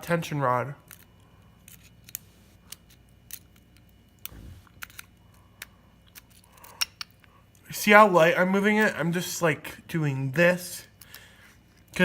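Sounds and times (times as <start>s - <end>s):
dull handling thump: 4.3s - 4.8s.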